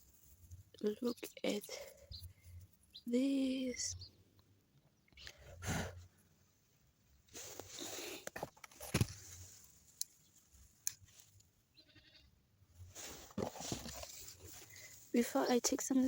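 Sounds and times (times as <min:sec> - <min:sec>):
hands rustling through soil: 0:00.0 - 0:03.9, 0:07.2 - 0:11.6, 0:12.8 - 0:16.0.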